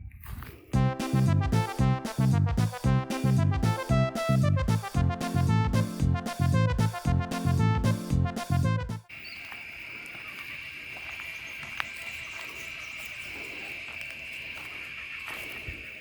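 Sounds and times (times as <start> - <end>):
keyboard music: 0.8 - 9.1
insects chirping: 9.1 - 16.0.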